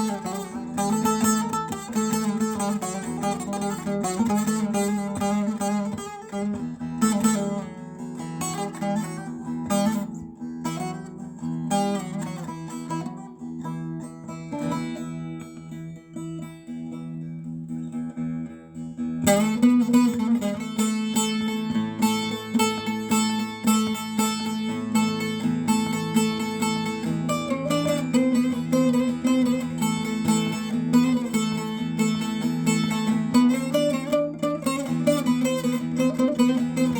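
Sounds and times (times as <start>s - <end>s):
plucked string instrument music: 0.0s - 36.9s.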